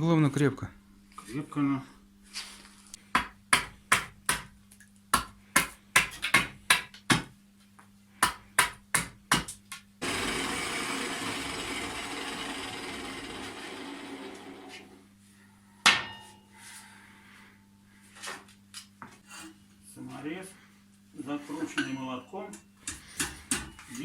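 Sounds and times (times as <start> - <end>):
hand hammer striking: 3.2 - 4.5, 5.1 - 7.3, 8.2 - 9.6, 22.9 - 24.0.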